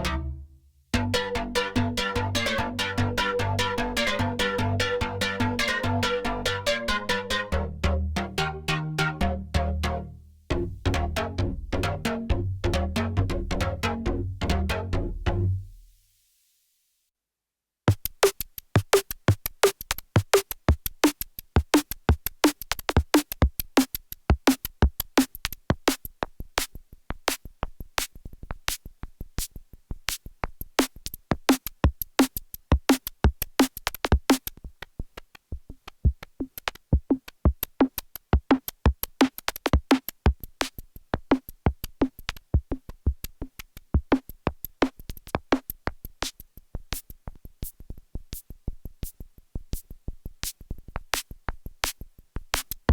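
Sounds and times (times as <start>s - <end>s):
synthesizer sequenced rhythm: 1.0s - 15.5s.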